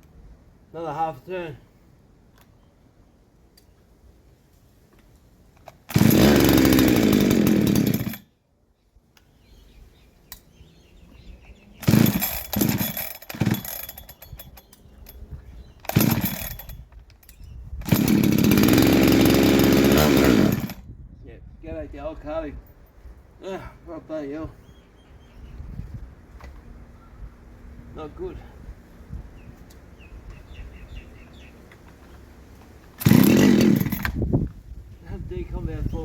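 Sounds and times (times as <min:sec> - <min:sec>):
chainsaw engine running and sputtering: 0:05.6 - 0:08.2, 0:11.8 - 0:14.2, 0:15.9 - 0:16.8, 0:17.8 - 0:20.8, 0:33.0 - 0:34.2.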